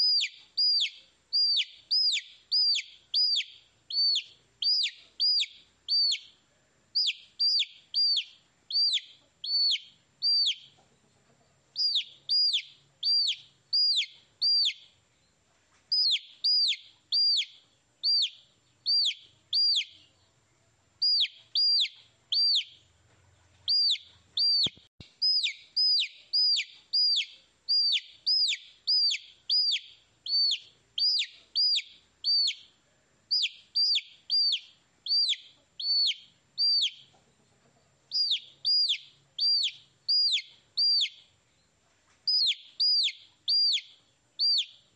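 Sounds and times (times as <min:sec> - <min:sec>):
baby chicks peeping: 0:00.0 - 0:44.9.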